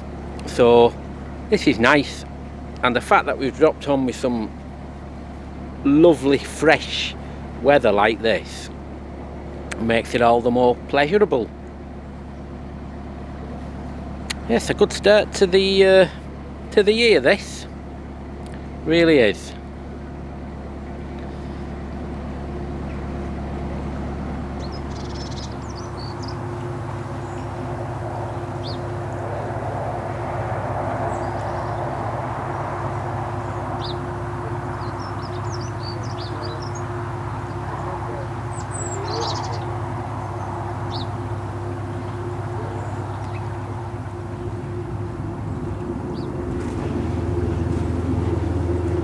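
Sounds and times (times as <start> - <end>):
birds chirping: 0.0 - 8.8, 20.9 - 49.0
boat diesel engine running: 0.0 - 49.0.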